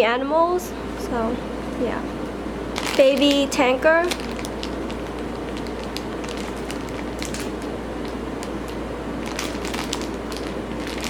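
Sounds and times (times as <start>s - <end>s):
background hiss and hum: 0.0s - 11.0s
squishy toys crinkling: 2.8s - 11.0s.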